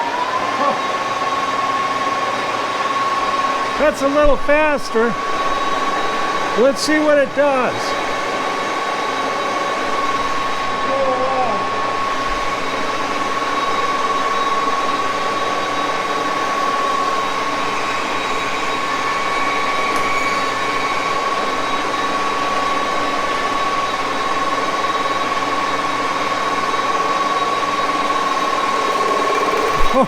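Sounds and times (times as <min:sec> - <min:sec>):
lathe cutting metal tube: 0:15.3 - 0:21.4, 0:27.4 - 0:30.0
high-pitched whine: 0:26.2 - 0:30.0.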